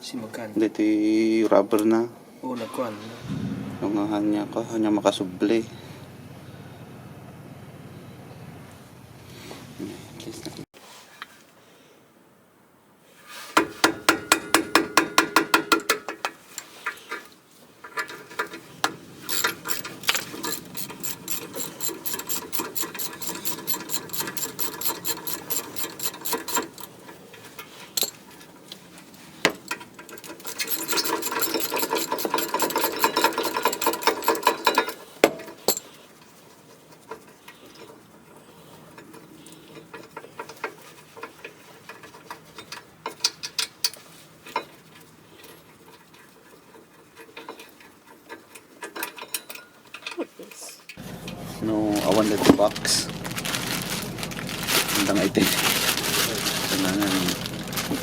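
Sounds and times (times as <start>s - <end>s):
ratchet wrench clicking: 18.0s - 28.2s, 29.4s - 35.9s.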